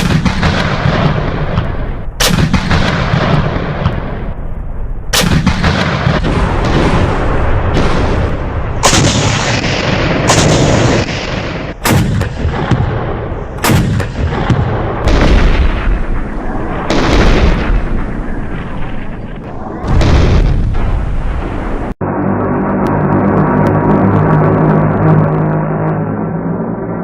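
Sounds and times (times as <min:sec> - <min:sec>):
distant firing: 0:00.0 - 0:04.4, 0:05.1 - 0:22.0
heavy artillery shots: 0:00.0 - 0:22.0.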